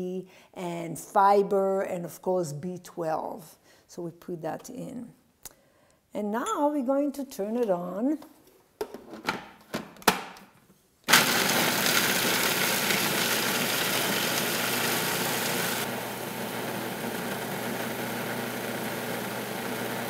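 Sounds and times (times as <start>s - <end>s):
food processor grinding: 11.1s - 20.0s.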